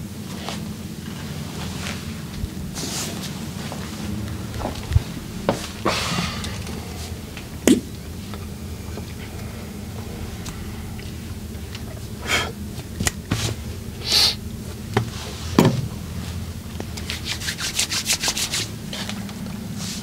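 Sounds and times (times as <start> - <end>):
hands rubbing skin: 17.0 - 19.1.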